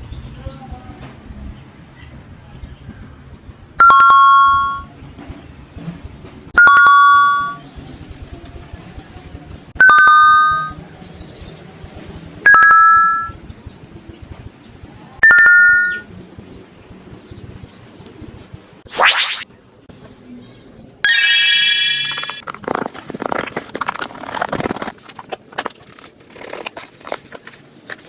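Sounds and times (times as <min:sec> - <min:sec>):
bell-like two-note chime: 0:03.8 - 0:04.9, 0:06.6 - 0:07.6, 0:15.2 - 0:16.0.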